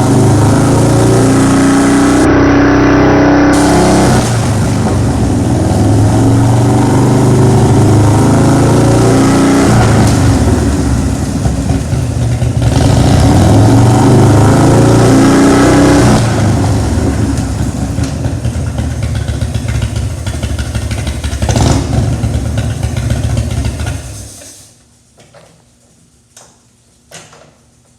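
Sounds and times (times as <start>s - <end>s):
motorcycle engine revving: 0.0s - 24.4s.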